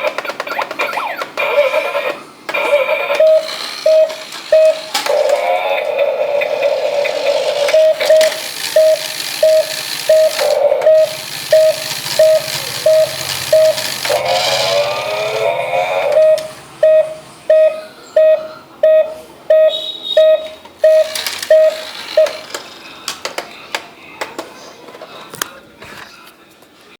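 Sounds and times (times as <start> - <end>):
toy single-pitched beeps: 3.2 - 4.9, 7.7 - 14.8, 16.2 - 22.4.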